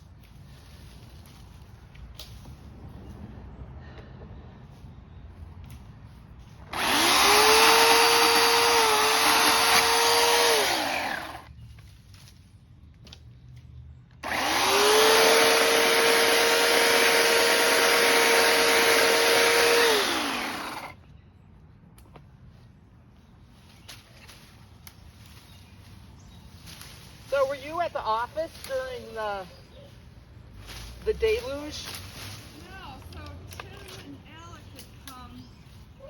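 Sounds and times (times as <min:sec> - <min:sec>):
chainsaw whining: 0:06.7 - 0:11.5, 0:14.2 - 0:21.0.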